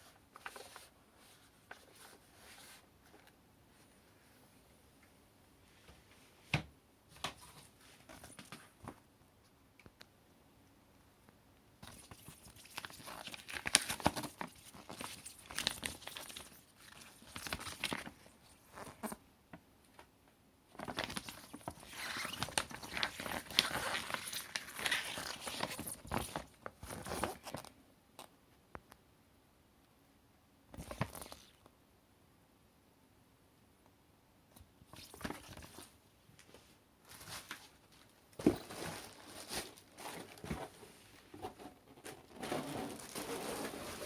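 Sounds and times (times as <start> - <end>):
plastic packaging crinkling: 11.9 - 19.2, 20.8 - 27.7, 37.1 - 44.0.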